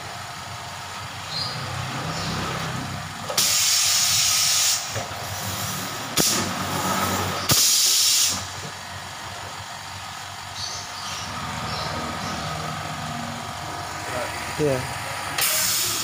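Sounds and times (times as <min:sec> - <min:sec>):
low engine hum: 0:00.0 - 0:03.4, 0:08.3 - 0:16.0
spray gun hissing bursts: 0:03.4 - 0:06.5, 0:07.5 - 0:08.4, 0:15.4 - 0:16.0.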